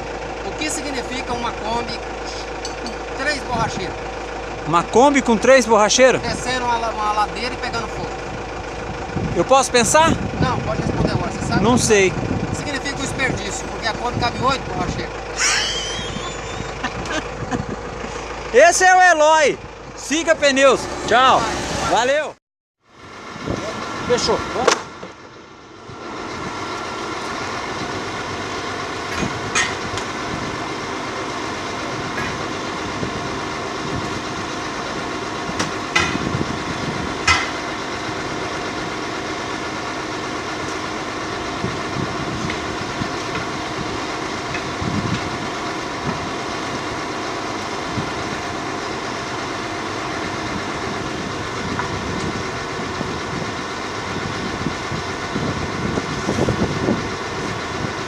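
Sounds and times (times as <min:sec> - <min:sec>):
vehicle engine running: 0:00.0 - 0:58.0.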